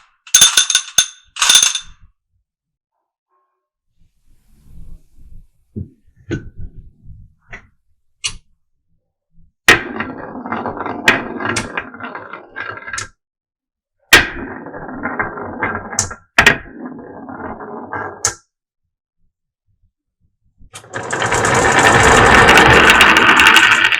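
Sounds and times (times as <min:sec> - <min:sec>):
marbles rattling down wooden track: 0:20.8 - 0:23.9.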